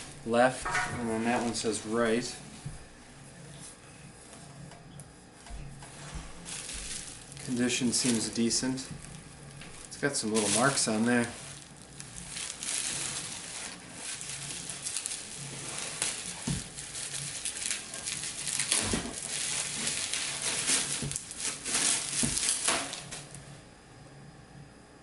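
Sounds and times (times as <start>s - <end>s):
wrapping rustling and crinkling: 0.0s - 4.6s, 5.4s - 23.4s.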